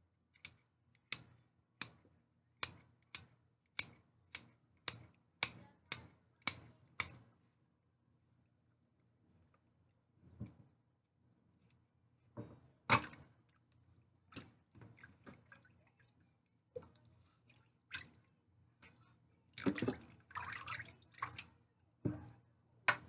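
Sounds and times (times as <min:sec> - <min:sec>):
water splashing in a sink: 0:12.9 - 0:23.0.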